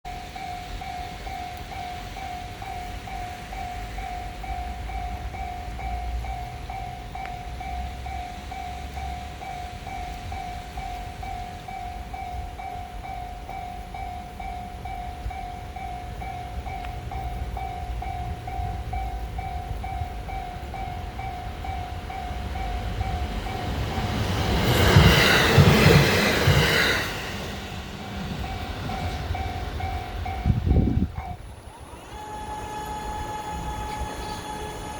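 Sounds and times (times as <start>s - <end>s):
electric train rumble: 0.1s - 34.9s
level crossing alarm dinging: 0.1s - 34.9s
train wheel clatter and hiss: 23.2s - 31.1s, 31.9s - 34.9s.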